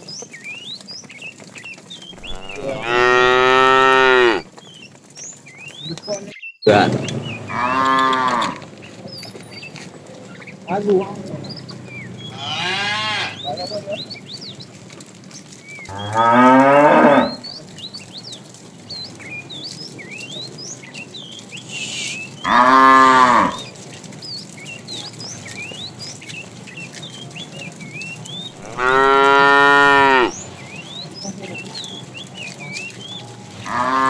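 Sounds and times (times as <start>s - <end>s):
cattle mooing: 2.2s - 4.5s, 7.5s - 8.7s, 12.3s - 13.5s, 15.9s - 17.5s, 22.1s - 23.7s, 28.6s - 30.5s, 33.5s - 34.0s.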